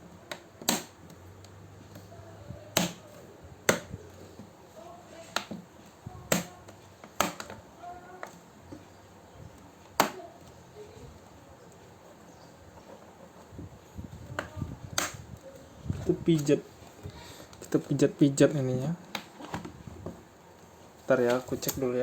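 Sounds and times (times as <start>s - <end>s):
plastic clips snapping into place: 0.3s - 1.0s, 6.3s - 7.6s, 14.4s - 15.2s.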